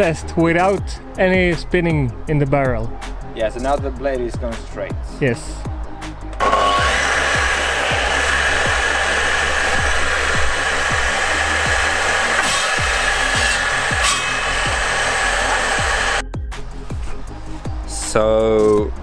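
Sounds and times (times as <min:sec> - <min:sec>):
music with thumping beat: 0:00.0 - 0:19.0
blade rubbing on wood: 0:06.4 - 0:16.2
table saw whining: 0:06.4 - 0:16.2.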